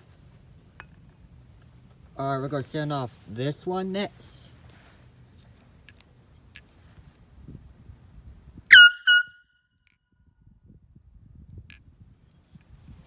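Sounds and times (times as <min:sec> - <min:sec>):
air horn blasts: 0:08.7 - 0:09.4.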